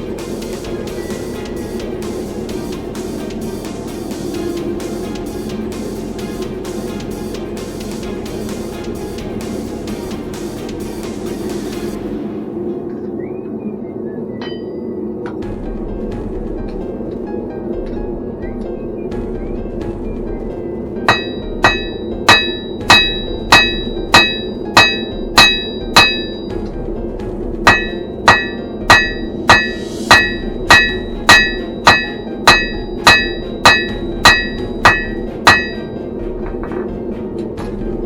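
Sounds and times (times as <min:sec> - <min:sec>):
steady low hum: 0:00.0 - 0:38.0
hammer striking steel on anvil: 0:14.4 - 0:15.4, 0:21.0 - 0:26.7, 0:27.6 - 0:36.8.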